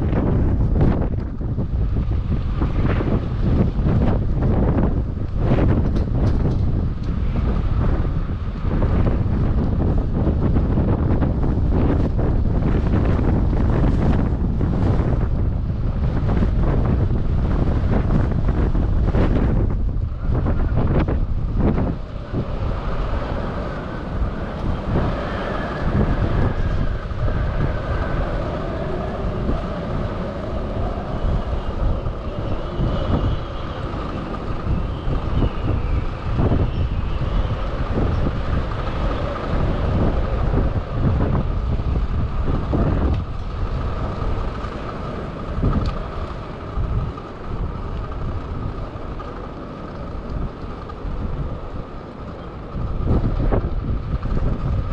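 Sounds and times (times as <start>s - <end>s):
wind buffeting microphone: 0.0s - 54.9s
faint wavering whistling: 22.0s - 41.0s.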